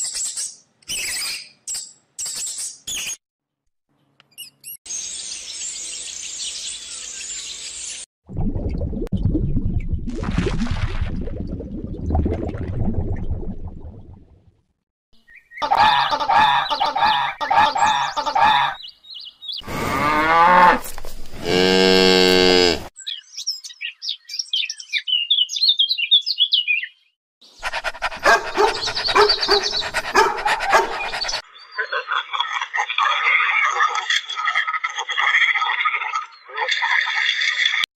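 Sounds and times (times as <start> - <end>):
animal calls: 27.6 - 32.3
high bird chirps: 28.2 - 31.8.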